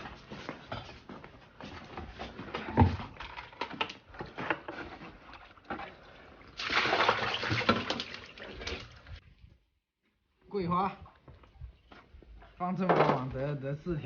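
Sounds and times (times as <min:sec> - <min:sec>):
water splashing: 0:06.3 - 0:09.2.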